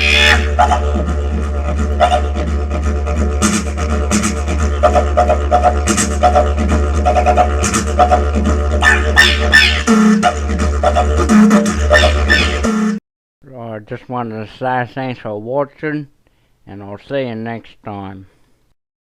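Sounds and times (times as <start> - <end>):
didgeridoo drone: 0.0 - 12.7
high-pitched didgeridoo calls: 0.0 - 12.7.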